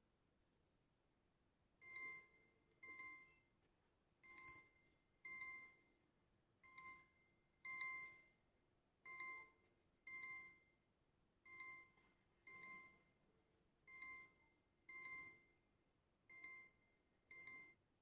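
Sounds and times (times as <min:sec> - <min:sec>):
phone alarm chime: 0:01.8 - 0:03.5, 0:04.2 - 0:06.0, 0:06.6 - 0:10.8, 0:11.4 - 0:13.2, 0:13.9 - 0:15.7, 0:16.3 - 0:17.8.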